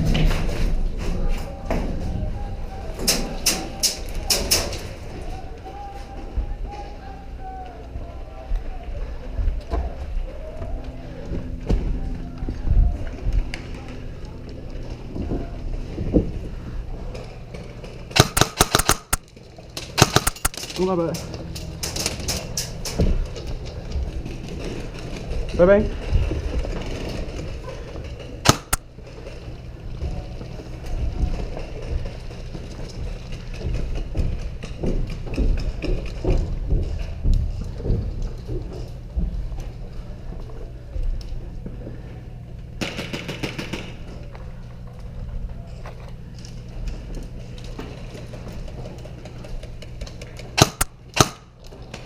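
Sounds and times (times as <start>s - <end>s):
airsoft gun shots: 18.2s - 19.2s, 20.0s - 20.6s, 28.4s - 28.8s, 50.6s - 51.5s.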